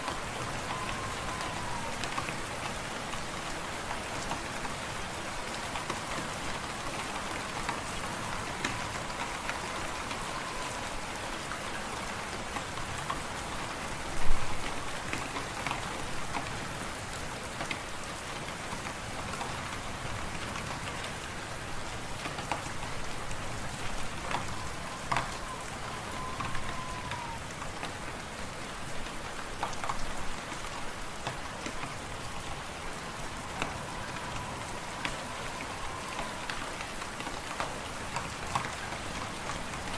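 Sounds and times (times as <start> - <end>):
wind whistling: 0.0 - 3.0, 6.2 - 11.8, 22.8 - 27.6, 31.9 - 39.9.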